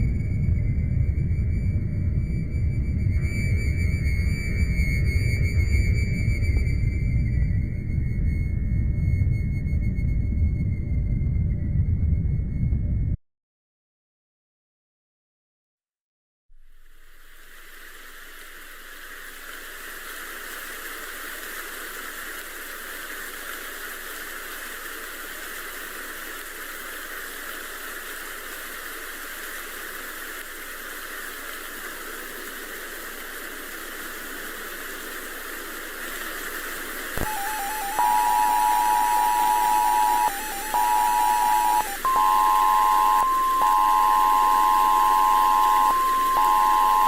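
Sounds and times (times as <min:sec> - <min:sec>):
static hiss: 0:16.6 - 0:47.0.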